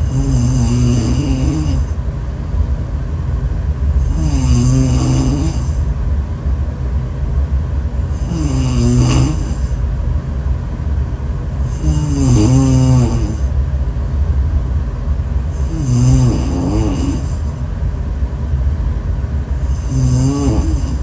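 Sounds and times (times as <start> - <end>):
loud snores: 0.0 - 2.0, 4.0 - 5.8, 8.1 - 9.8, 11.6 - 13.5, 15.5 - 17.5, 19.6 - 21.0
steady low rumble: 0.0 - 21.0.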